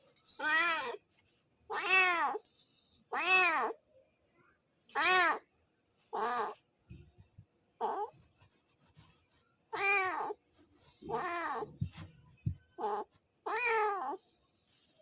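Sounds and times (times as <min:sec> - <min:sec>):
cat meowing angrily: 0:00.4 - 0:01.0, 0:01.7 - 0:02.4, 0:03.1 - 0:03.8, 0:05.0 - 0:05.4, 0:09.8 - 0:10.4, 0:11.1 - 0:11.7, 0:12.8 - 0:14.2.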